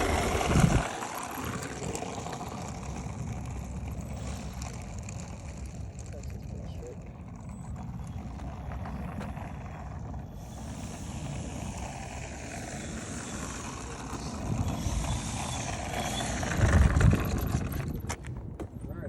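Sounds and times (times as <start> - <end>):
model airplane motor whirring: 0.0 - 18.4
wind rumble on microphone: 0.0 - 19.0.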